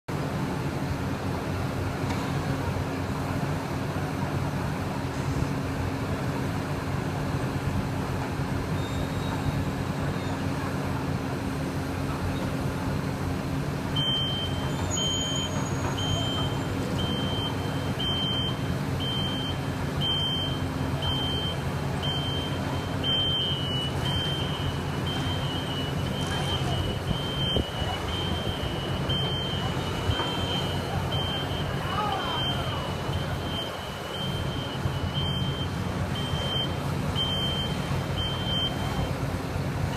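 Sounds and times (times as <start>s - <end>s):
diesel engine running: 0.1s - 39.9s
reversing alarm beeping: 13.9s - 39.9s.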